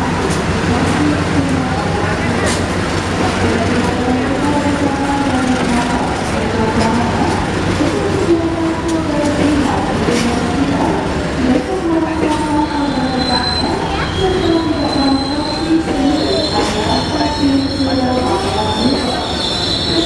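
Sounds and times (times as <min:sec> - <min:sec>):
train rumbling on rails: 0:00.0 - 0:20.0
wheels squealing: 0:12.7 - 0:20.0.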